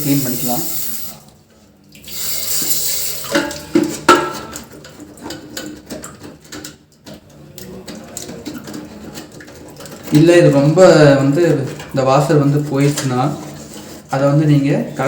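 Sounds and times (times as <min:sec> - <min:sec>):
water spray hissing: 0:00.0 - 0:01.3, 0:02.1 - 0:03.3.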